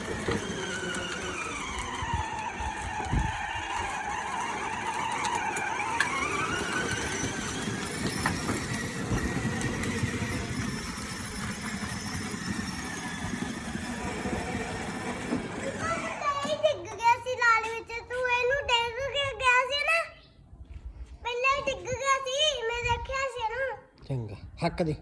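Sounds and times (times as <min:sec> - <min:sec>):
toy car whine: 0:00.0 - 0:18.4.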